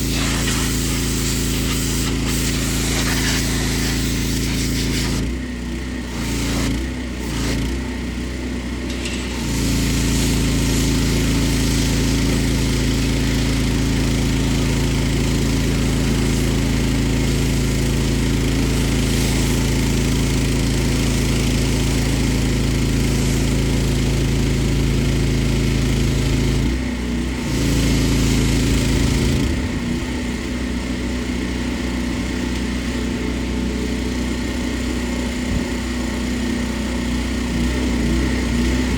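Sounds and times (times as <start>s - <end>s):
hiss: 0.0s - 5.3s, 6.1s - 7.6s, 8.9s - 14.7s, 18.6s - 20.3s
pressure washer engine running: 0.0s - 38.9s.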